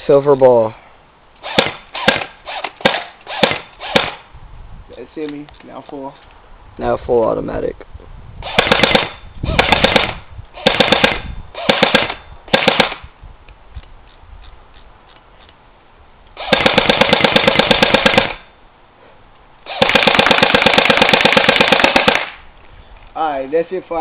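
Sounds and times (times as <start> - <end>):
airsoft gun firing bursts: 1.4 - 4.2, 8.4 - 13.0, 16.4 - 18.4, 19.7 - 22.4.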